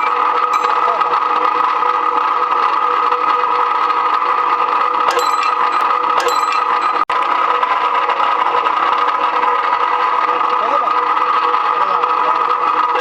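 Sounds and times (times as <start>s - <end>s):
metallic clinks: 0.0s - 1.1s, 5.1s - 7.1s
electric motor humming: 0.0s - 13.0s.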